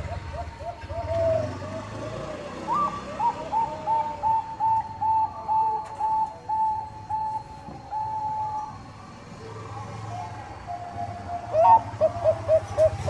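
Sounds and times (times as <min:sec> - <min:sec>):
zebra dove cooing: 0:00.0 - 0:13.0.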